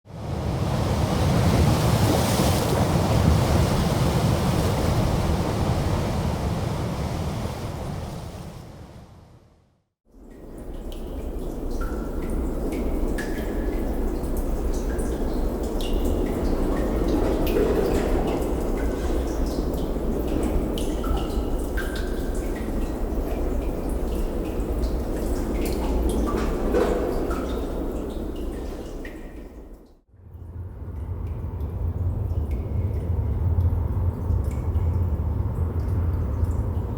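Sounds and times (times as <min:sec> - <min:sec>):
surf rumbling: 0:00.1 - 0:09.5, 0:13.8 - 0:29.8
wind rumbling in cave: 0:00.1 - 0:09.7
water washing: 0:00.2 - 0:08.9, 0:10.3 - 0:30.0
water drips plinking: 0:10.1 - 0:36.9.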